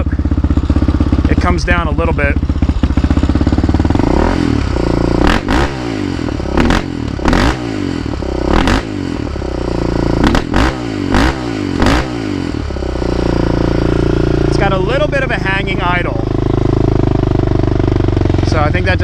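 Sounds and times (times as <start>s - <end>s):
atv engine revving: 0.0s - 19.0s.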